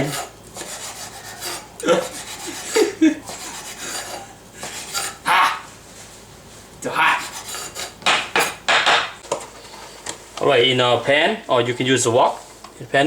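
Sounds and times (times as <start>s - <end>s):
knife slicing egg: 7.2s - 8.7s.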